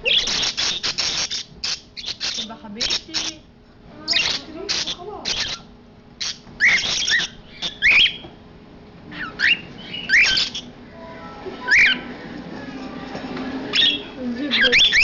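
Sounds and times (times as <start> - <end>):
cockatiel squawking and chirping: 0.0 - 3.4, 4.1 - 8.3, 9.1 - 10.7, 11.7 - 12.1, 13.7 - 15.0.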